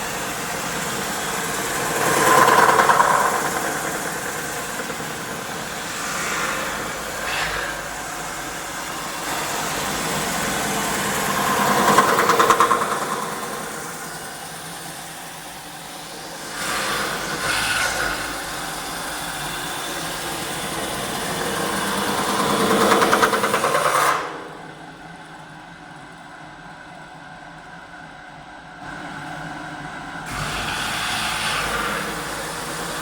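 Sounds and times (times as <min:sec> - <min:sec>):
metal spinning machine roller pressing: 0:00.0 - 0:25.1
machine hum: 0:00.0 - 0:27.6
fast rattling edge: 0:00.5 - 0:14.9, 0:16.6 - 0:24.8.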